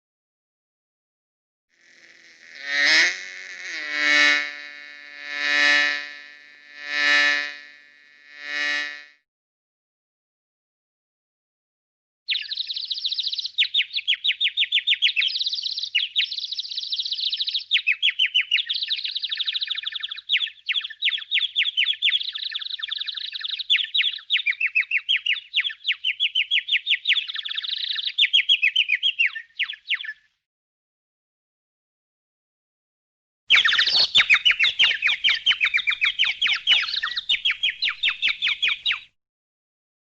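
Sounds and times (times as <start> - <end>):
bird twittering: 12.3 - 30.2, 33.5 - 39.2.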